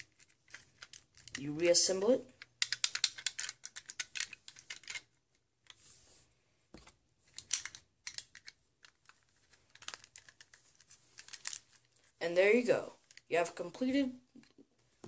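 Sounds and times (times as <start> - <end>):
plastic bricks clicking together: 0.0 - 1.5, 2.3 - 5.8, 6.8 - 11.9.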